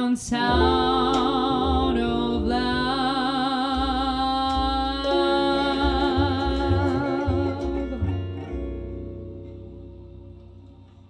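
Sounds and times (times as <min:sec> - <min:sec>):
woman singing with vibrato: 0:00.0 - 0:08.6
bass: 0:00.0 - 0:11.0
guitar: 0:00.0 - 0:11.0.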